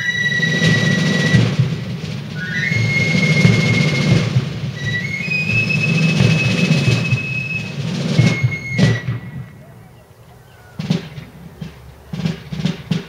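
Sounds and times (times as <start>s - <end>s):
fife playing high notes: 0.0s - 1.8s, 2.4s - 9.9s.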